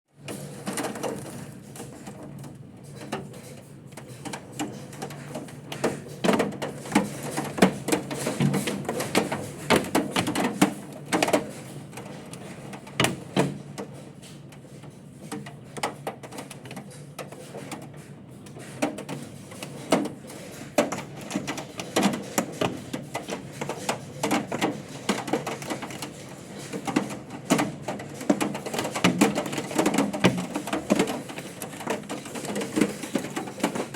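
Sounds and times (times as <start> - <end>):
hailstones clattering: 0.3 - 2.4, 18.6 - 33.9.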